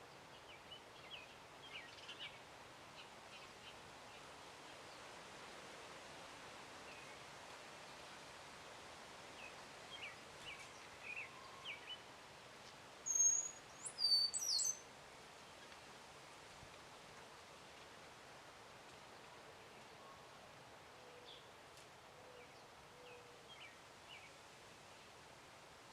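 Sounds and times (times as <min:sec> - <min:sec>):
background hiss: 0:00.0 - 0:25.9
songbirds chirping: 0:09.4 - 0:16.4.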